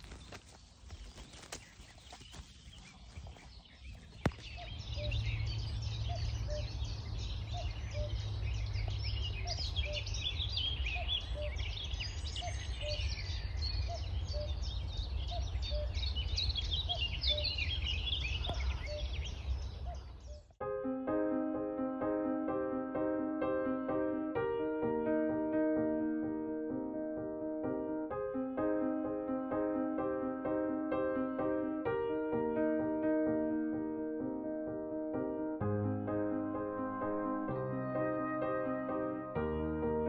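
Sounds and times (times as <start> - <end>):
chorus of songbirds: 0.0 - 20.6
cuckoo calling: 6.0 - 6.8, 7.5 - 8.3, 9.4 - 11.7, 12.3 - 13.2, 13.8 - 16.0, 16.8 - 20.6.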